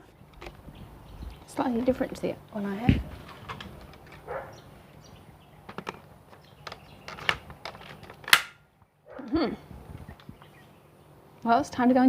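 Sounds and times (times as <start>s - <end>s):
plastic parts clicking together: 3.2s - 4.3s, 5.6s - 8.6s.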